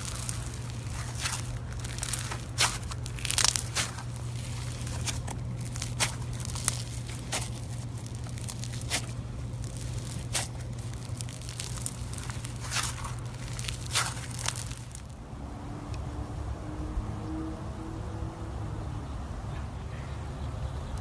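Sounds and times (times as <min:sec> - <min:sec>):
slime crackling and popping: 0:00.0 - 0:15.2.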